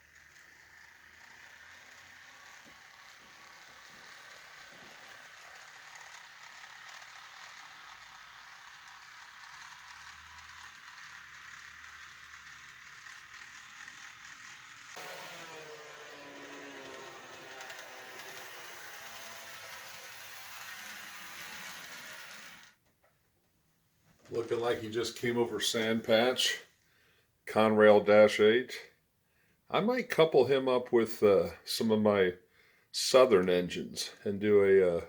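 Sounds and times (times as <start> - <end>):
small electric motor whirring: 0.0 - 22.8
wheels rolling on rails: 0.0 - 22.9.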